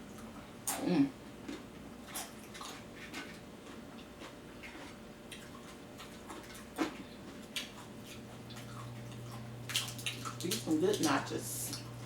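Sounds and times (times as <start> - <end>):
person chewing crunchy chips: 0.0 - 12.0.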